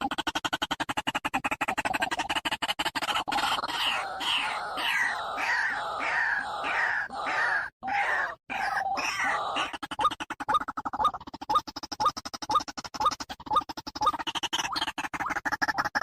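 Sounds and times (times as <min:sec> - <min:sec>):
bird squawking: 0:03.0 - 0:09.9.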